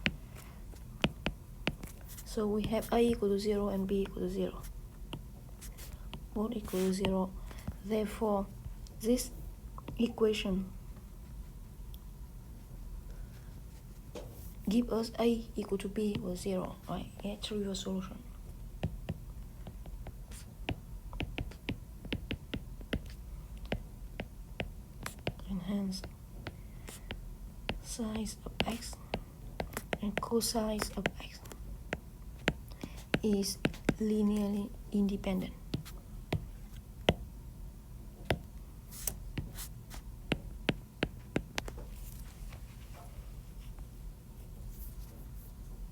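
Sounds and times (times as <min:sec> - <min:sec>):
pen ticking and tapping on surface: 0:00.0 - 0:03.2, 0:15.8 - 0:17.4, 0:18.8 - 0:34.6, 0:35.7 - 0:37.3, 0:38.2 - 0:38.5, 0:39.3 - 0:41.8
steady low hum: 0:00.0 - 0:45.9.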